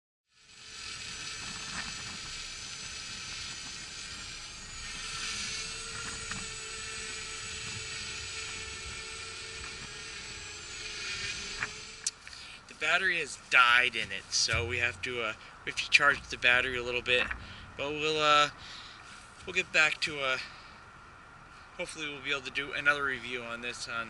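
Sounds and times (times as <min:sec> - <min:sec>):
drone propellers whining: 0:00.4 - 0:19.5.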